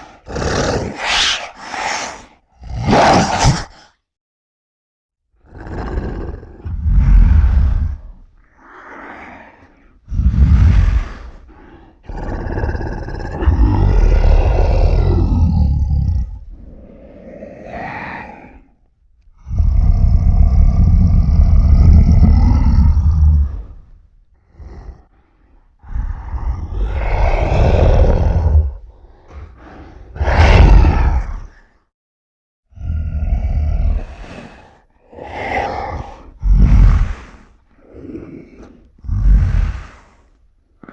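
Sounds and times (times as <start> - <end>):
monster roaring: 9.1 - 23.9, 25.8 - 31.6, 32.8 - 37.3.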